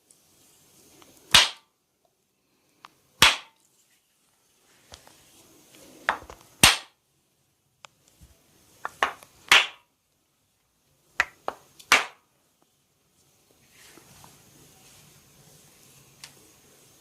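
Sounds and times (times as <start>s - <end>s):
sharp hand slaps: 1.3s - 1.7s, 3.2s - 3.6s, 6.6s - 7.0s, 9.5s - 9.8s, 11.2s - 12.2s.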